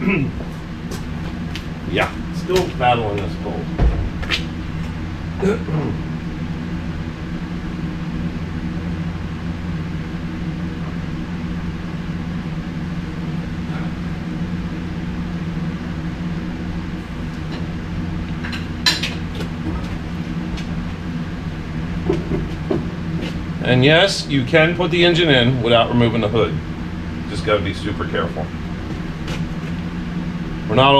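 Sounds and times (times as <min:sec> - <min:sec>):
machine humming: 0:00.0 - 0:30.9.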